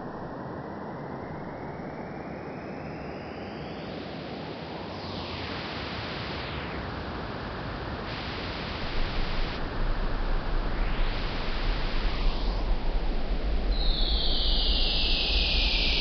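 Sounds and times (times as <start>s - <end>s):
sweeping synthesized hiss: 8.0s - 16.0s.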